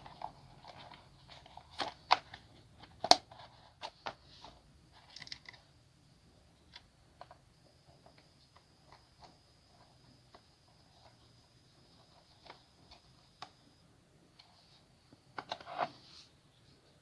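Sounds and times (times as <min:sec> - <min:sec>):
faint high whine: 0:05.6 - 0:17.0.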